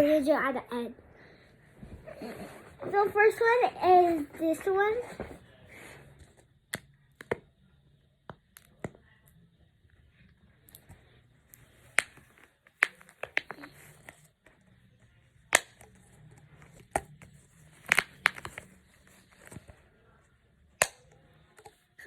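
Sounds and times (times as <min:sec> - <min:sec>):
fidget toy pops and clicks: 0:15.5 - 0:16.0, 0:20.7 - 0:21.8.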